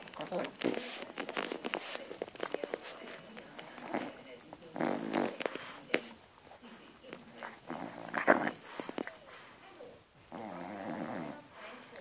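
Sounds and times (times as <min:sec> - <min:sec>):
dog snoring: 0:03.5 - 0:06.1, 0:07.3 - 0:09.6, 0:10.3 - 0:11.6.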